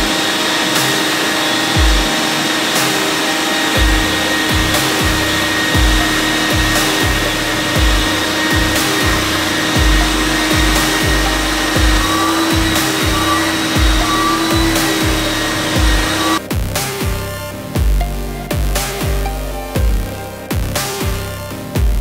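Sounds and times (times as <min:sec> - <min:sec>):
carpet cleaner motor whining: 0:00.0 - 0:16.4
electronic music with deep beat: 0:00.0 - 0:22.0.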